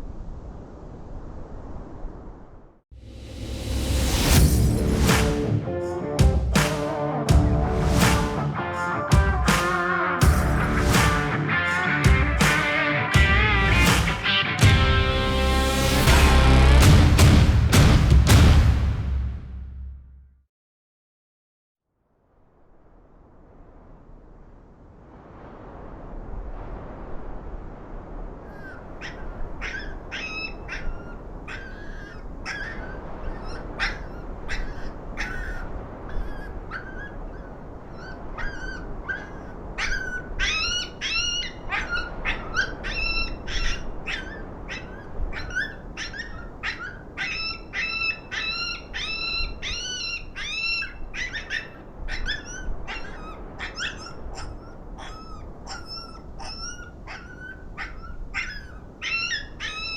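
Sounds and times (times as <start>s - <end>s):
wind on microphone: 22.8s - 59.9s
coyote pup yips and whines: 28.5s - 59.9s.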